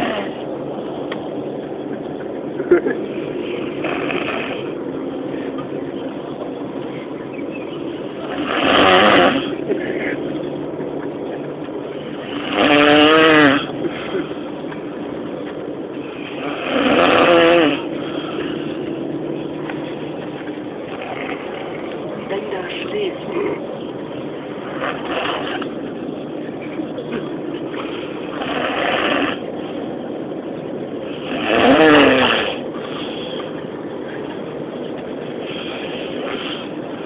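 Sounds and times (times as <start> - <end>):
person snoring loudly: 8.2 - 9.5, 12.3 - 13.7, 16.3 - 18.4, 31.2 - 32.6.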